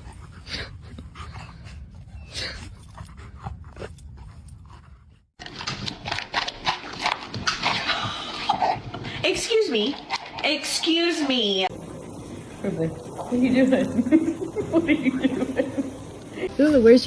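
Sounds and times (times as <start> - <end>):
dog panting: 0.0 - 5.4.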